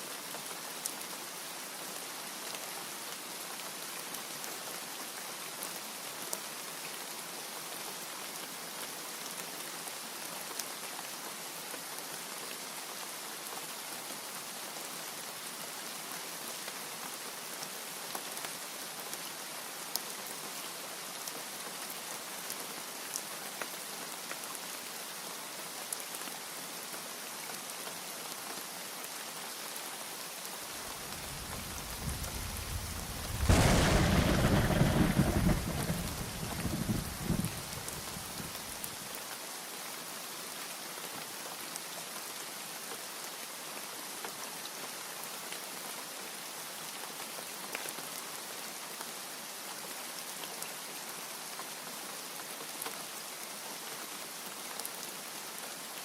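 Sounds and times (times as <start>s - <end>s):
heavy rain hissing: 30.6s - 39.1s
rain drop ticks: 30.9s - 38.2s
thunder rumbling and clapping: 31.1s - 38.5s.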